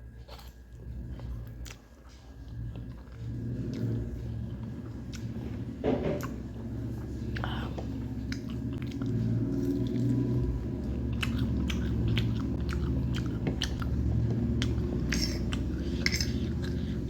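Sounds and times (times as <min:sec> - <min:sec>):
person chewing crunchy food: 0:00.0 - 0:17.0.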